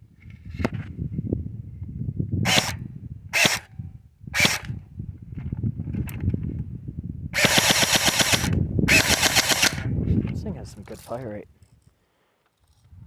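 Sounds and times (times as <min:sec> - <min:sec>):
airsoft gun firing bursts: 0:02.5 - 0:02.8, 0:03.4 - 0:03.7, 0:04.4 - 0:04.7, 0:07.4 - 0:09.9.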